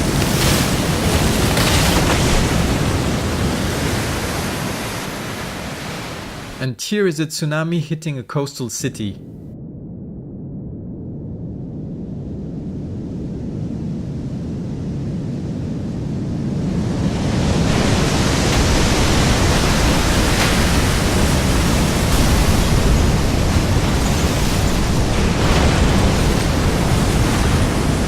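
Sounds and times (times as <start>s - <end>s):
loud rushing wash of water: 0.0s - 6.6s, 16.6s - 28.0s
deep rumble: 9.3s - 16.9s.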